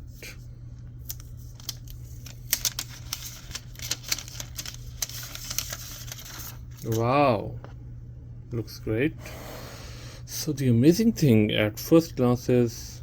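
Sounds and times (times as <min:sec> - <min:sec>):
steady low hum: 0:00.0 - 0:13.0
plastic rustling: 0:01.1 - 0:07.0.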